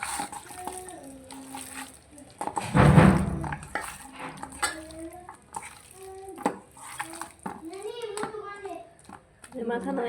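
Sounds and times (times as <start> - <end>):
bowl clinking and scraping: 0.0 - 8.4
hands mixing chicken in flour: 0.0 - 10.0.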